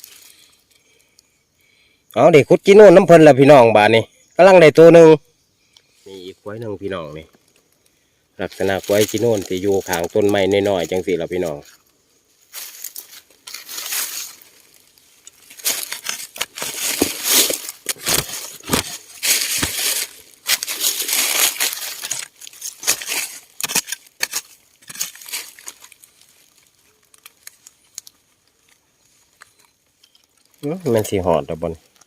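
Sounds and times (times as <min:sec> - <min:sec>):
digging through dry leaves and soil: 0:08.4 - 0:32.0.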